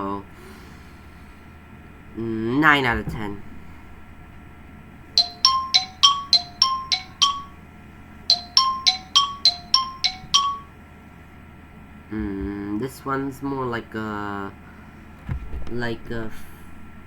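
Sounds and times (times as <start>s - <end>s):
bell-like chime ringtone: 5.2s - 7.6s, 8.3s - 10.8s.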